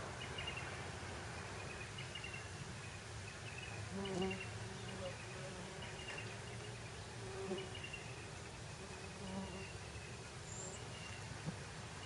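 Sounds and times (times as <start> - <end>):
bumblebee buzzing: 3.9 - 5.8.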